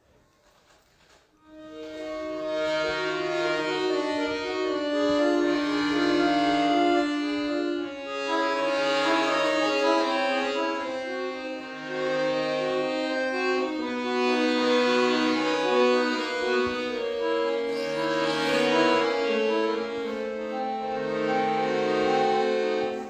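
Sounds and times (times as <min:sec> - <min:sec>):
solo accordion melody: 0:01.4 - 0:23.0.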